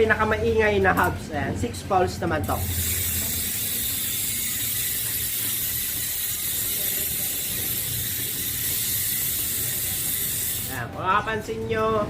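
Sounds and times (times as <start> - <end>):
bicycle hub freewheel ratcheting: 2.4 - 11.0.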